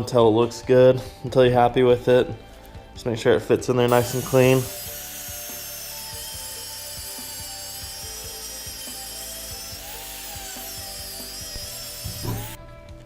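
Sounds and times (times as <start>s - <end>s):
power grinder whining: 3.9s - 12.6s.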